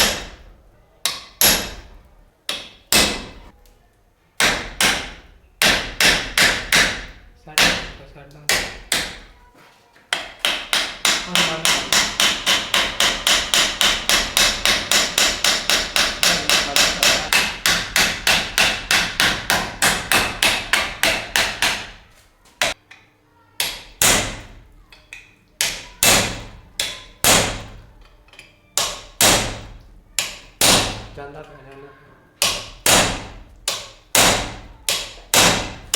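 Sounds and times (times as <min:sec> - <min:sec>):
hammer striking metal: 0:01.0 - 0:01.9, 0:10.1 - 0:22.0, 0:32.4 - 0:35.9.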